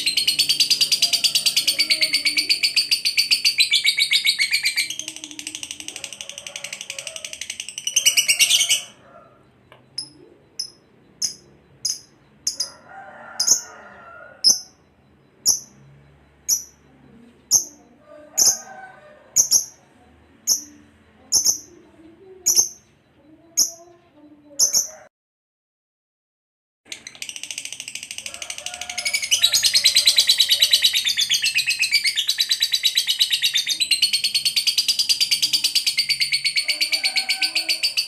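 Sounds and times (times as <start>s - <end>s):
sharp high bird chirps: 0.0s - 5.8s, 9.8s - 12.7s, 14.4s - 16.9s
lovebird chattering trill: 0.0s - 9.0s, 9.9s - 12.7s, 13.4s - 13.7s, 14.4s - 14.8s, 15.4s - 15.8s, 16.5s - 16.8s, 19.3s - 19.8s, 20.4s - 22.9s, 23.5s - 25.1s, 26.9s - 38.0s.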